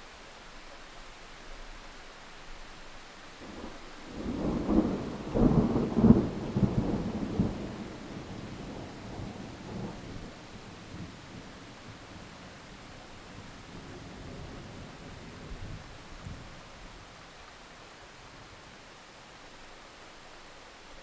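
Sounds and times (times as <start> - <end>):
steady rain hiss: 0.0 - 21.0
thunder rumbling: 3.4 - 16.6.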